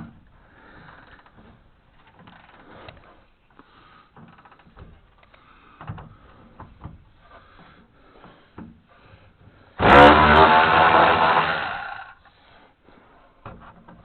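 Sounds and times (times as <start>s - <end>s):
loud abrupt sound: 9.8s - 12.1s.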